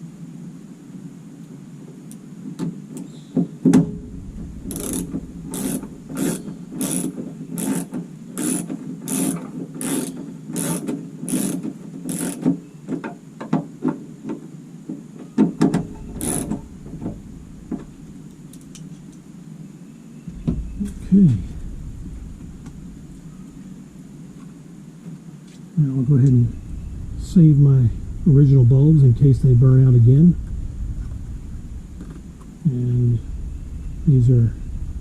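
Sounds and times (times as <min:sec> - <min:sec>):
hand ratchet strokes: 0:04.7 - 0:12.5, 0:16.2 - 0:16.6
dull handling knocks: 0:15.4 - 0:19.0, 0:20.3 - 0:23.7.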